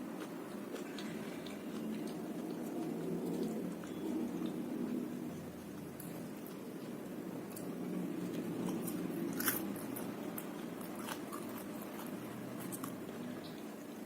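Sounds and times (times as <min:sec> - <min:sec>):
chewing crispy food: 0:00.0 - 0:14.0
sharp pastry crunches: 0:08.3 - 0:13.1.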